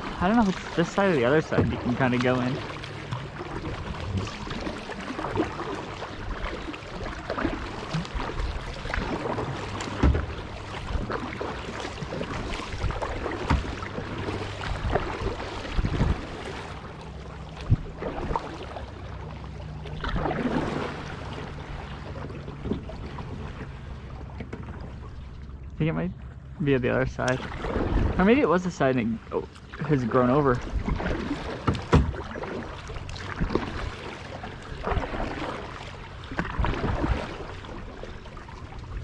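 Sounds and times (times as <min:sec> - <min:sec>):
paddle strokes splashing: 0:00.0 - 0:25.7, 0:26.8 - 0:39.0
low hum: 0:00.0 - 0:39.0
knocks against kayak hull: 0:09.8 - 0:10.3, 0:13.4 - 0:13.8, 0:31.0 - 0:32.3.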